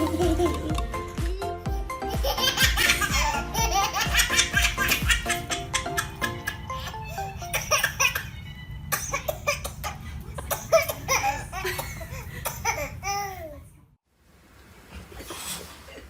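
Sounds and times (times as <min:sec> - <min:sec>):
background music: 0:00.0 - 0:09.6.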